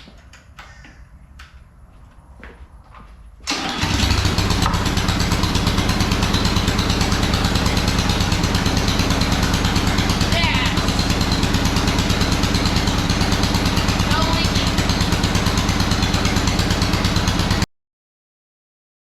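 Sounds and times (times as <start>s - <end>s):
small gas engine running: 3.5s - 17.7s.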